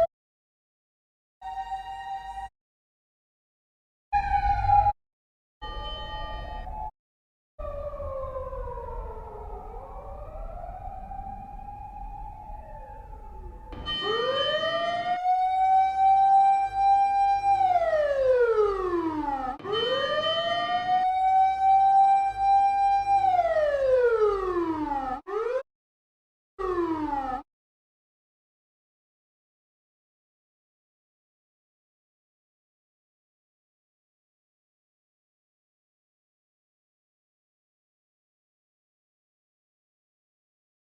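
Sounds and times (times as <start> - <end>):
siren winding up and down: 1.4 - 2.5, 4.2 - 5.0, 5.6 - 6.9, 7.6 - 25.6, 26.6 - 27.5
wavering siren tone: 1.4 - 2.5, 4.2 - 5.0, 5.6 - 6.9, 7.6 - 25.6, 26.6 - 27.5.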